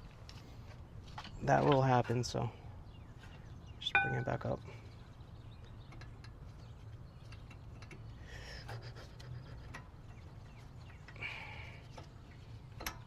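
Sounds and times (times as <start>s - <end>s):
low steady hum: 0.0s - 13.0s
small metal clicks: 5.8s - 8.8s, 11.9s - 13.0s
breathy exhales: 11.2s - 11.9s.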